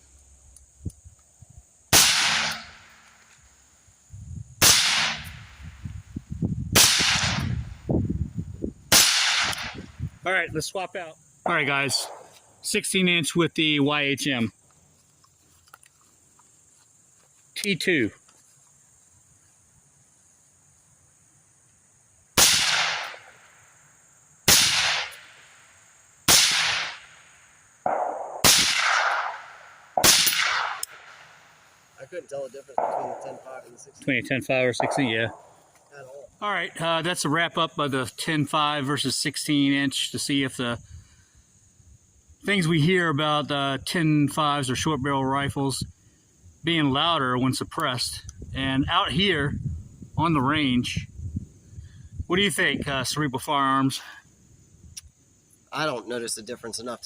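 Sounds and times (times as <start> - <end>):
dull low gunshot report: 1.9 - 2.9, 4.6 - 6.0, 6.7 - 7.9, 8.9 - 10.2, 11.4 - 12.3, 22.4 - 23.3, 24.5 - 25.3, 26.3 - 27.2, 27.8 - 31.3, 32.8 - 33.6, 34.8 - 35.5
suppressed rifle shots: 1.9 - 3.1, 4.6 - 5.5, 6.8 - 7.6, 8.9 - 9.9, 22.4 - 23.4, 24.5 - 25.4, 26.3 - 27.2, 27.8 - 31.4, 32.8 - 33.4, 34.8 - 35.4.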